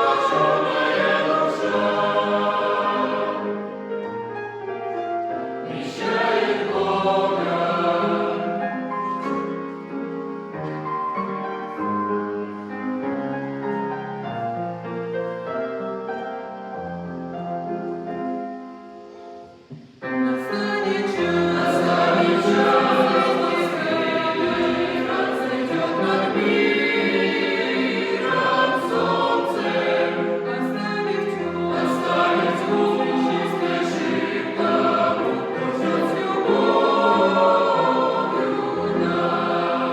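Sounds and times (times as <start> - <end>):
choir singing in harmony: 0.0 - 10.6, 20.0 - 39.9.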